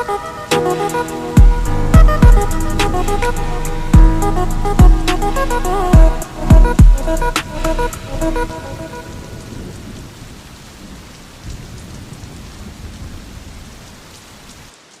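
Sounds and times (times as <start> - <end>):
music: 0.0 - 9.1
rain falling steadily: 0.0 - 15.0
low rumble of thunder: 1.4 - 14.1.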